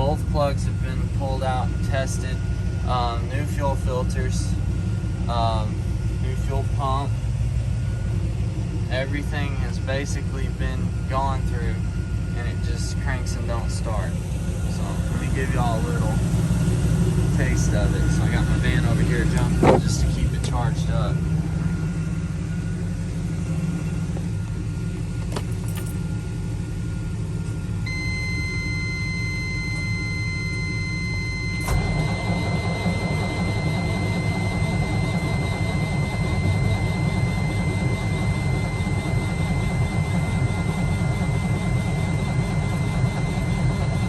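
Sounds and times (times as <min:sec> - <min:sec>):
high whine: 0:00.0 - 0:44.0
low engine rumble: 0:00.0 - 0:44.0
diesel engine cranking on starter: 0:12.4 - 0:21.9, 0:27.2 - 0:44.0.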